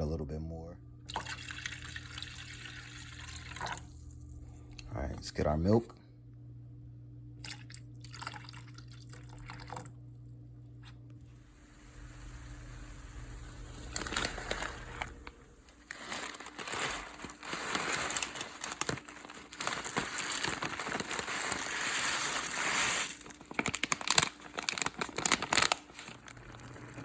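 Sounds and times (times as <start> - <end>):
crinkly packaging rustling: 11.4 - 27.0.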